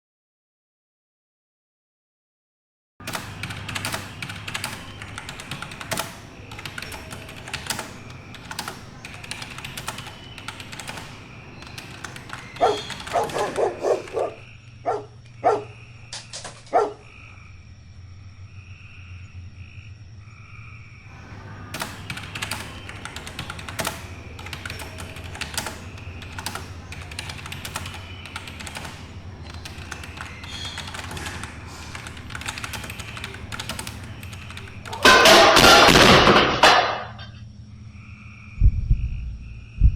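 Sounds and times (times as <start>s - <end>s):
typing on a keyboard: 3.0s - 14.4s, 21.1s - 35.6s.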